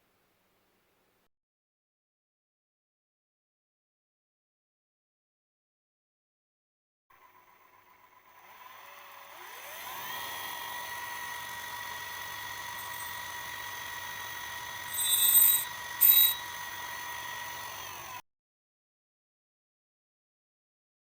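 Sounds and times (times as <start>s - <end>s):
spindle motor whine: 7.2s - 18.2s
harsh grinding bursts: 8.4s - 18.2s.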